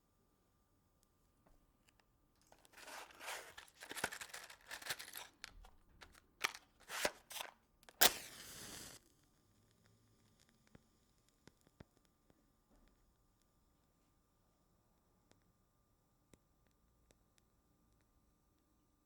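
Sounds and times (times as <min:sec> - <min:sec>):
match scraping on striker: 0:02.6 - 0:09.0
match flaring with hiss: 0:06.4 - 0:09.0.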